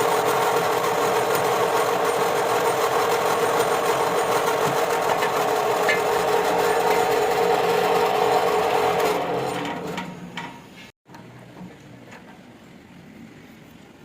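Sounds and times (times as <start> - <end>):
power tool humming: 0.0 - 10.1.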